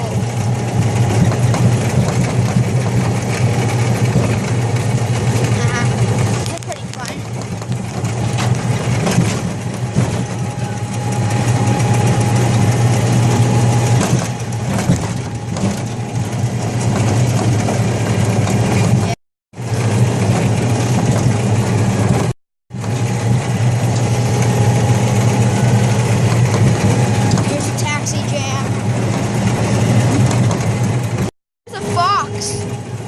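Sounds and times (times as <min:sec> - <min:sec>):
ride engine humming: 0:00.0 - 0:33.0.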